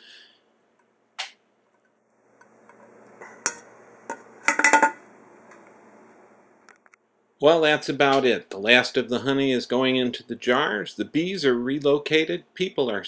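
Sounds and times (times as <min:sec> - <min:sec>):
glass jars clinking: 0:03.2 - 0:05.0.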